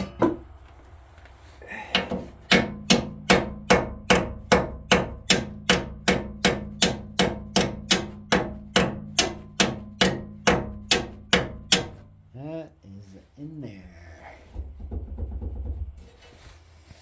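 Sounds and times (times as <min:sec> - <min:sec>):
hammer striking metal: 0:00.0 - 0:00.5, 0:01.9 - 0:12.2.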